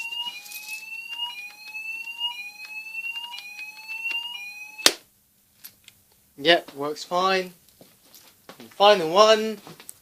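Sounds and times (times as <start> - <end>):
fire alarm rising tone: 0.0 - 5.0.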